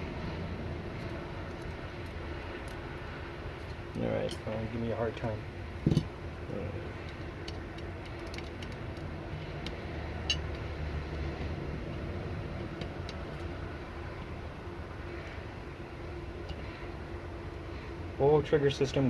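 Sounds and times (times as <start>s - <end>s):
low background rumble: 0.0s - 19.0s
small metal parts clicking: 7.0s - 10.6s.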